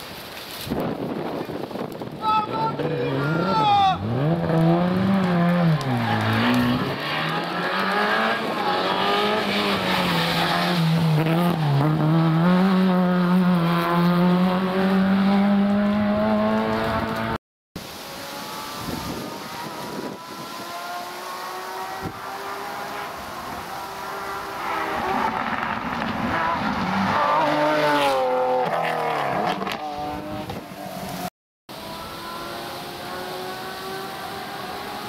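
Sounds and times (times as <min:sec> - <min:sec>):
distant rally car accelerating: 0:02.7 - 0:17.4, 0:18.1 - 0:35.0
rally car engine revving: 0:02.7 - 0:17.4, 0:18.1 - 0:35.0.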